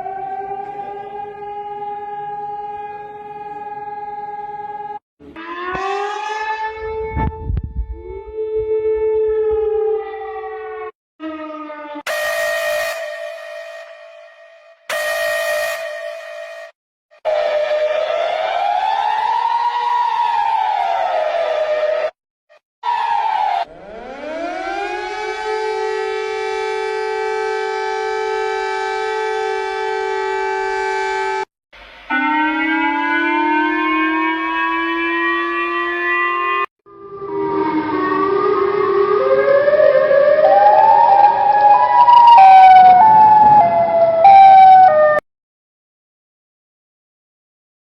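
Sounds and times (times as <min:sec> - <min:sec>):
harsh siren-like alarm tone: 0:00.0 - 0:45.2.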